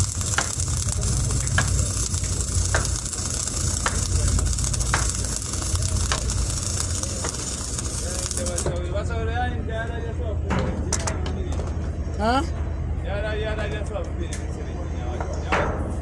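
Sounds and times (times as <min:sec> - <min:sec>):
welding arc crackling: 0:00.0 - 0:08.7.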